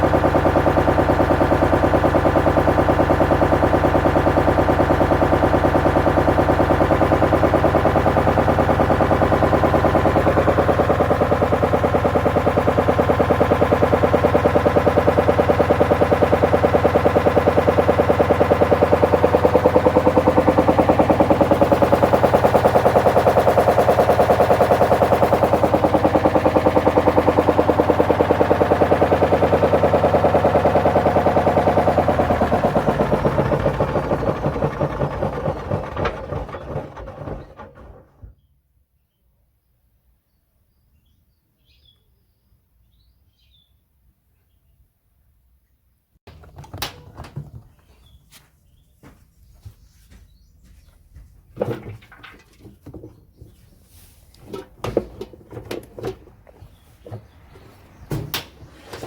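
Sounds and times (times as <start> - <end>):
washing machine motor hum: 0.0 - 38.2, 56.0 - 59.0
wood rattling in washing machine: 0.5 - 38.3, 46.3 - 48.0, 51.5 - 53.6, 54.4 - 59.0.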